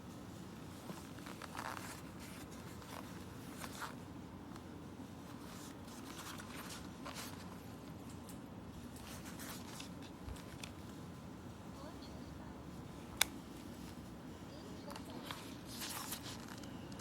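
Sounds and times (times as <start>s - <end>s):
steady low hum: 0.0s - 17.0s
scratchy rustles and scrapes: 0.6s - 4.0s, 5.2s - 7.7s, 8.9s - 10.6s, 14.8s - 17.0s.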